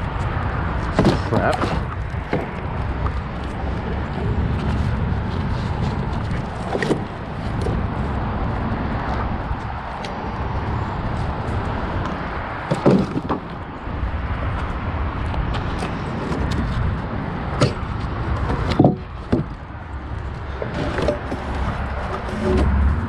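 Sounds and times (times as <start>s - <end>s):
street traffic hum: 0.0s - 23.0s
lumber knocking and clattering: 0.9s - 3.1s, 12.6s - 13.6s, 18.4s - 19.6s.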